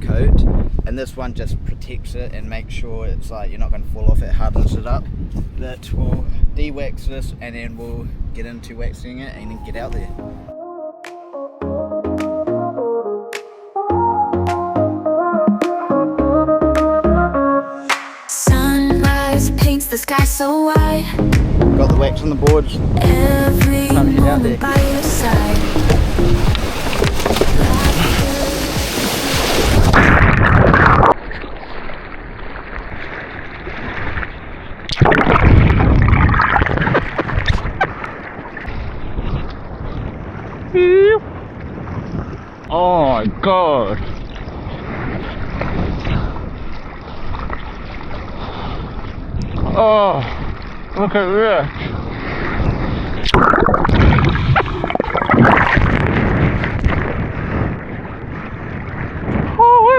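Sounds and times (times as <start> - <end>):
wind buffeting microphone: 0.0 - 10.5, 21.2 - 59.9
surf water rushing and splashing: 13.3 - 59.9
loud surge of churning water: 22.8 - 42.1, 51.8 - 59.9.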